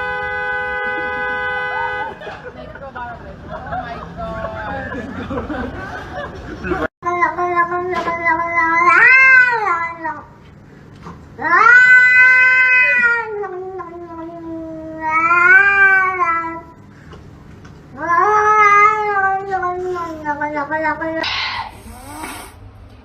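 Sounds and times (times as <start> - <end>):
cat yowling: 8.2 - 10.3, 11.4 - 16.7, 18.0 - 22.6.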